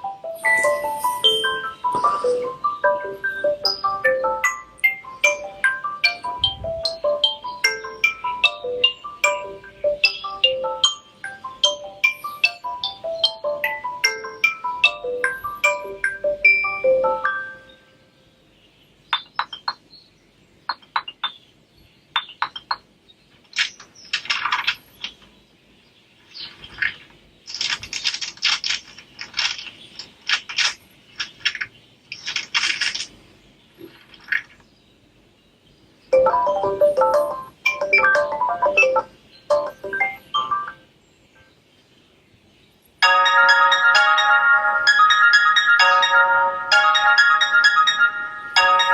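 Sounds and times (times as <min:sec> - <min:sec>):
quick ringtone tune: 0:00.0 - 0:17.7, 0:36.2 - 0:40.8, 0:43.0 - 0:48.9.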